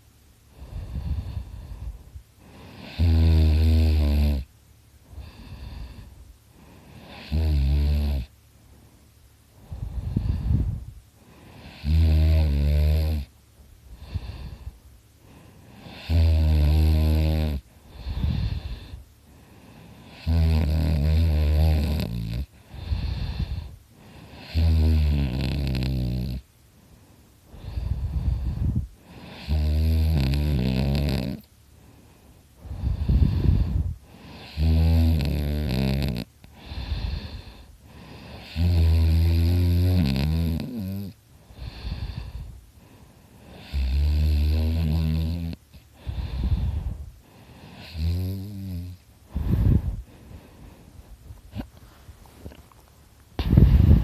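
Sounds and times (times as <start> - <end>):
man snoring loudly: 2.6 - 4.5, 7.0 - 8.3, 11.6 - 13.3, 15.7 - 19.0, 20.1 - 23.7, 24.3 - 26.4, 27.6 - 31.5, 32.8 - 42.4, 43.5 - 46.8, 47.6 - 49.8.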